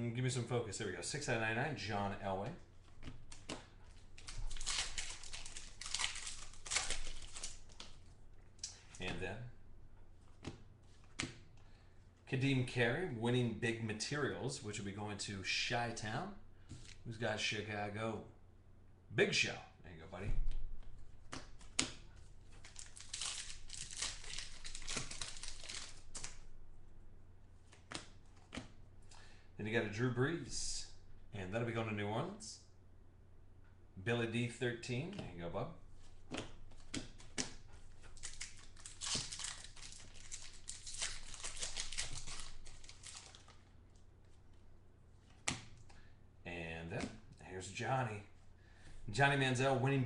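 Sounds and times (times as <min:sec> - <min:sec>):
plastic packaging crinkling: 0:02.8 - 0:09.2, 0:21.5 - 0:26.5, 0:36.0 - 0:44.4.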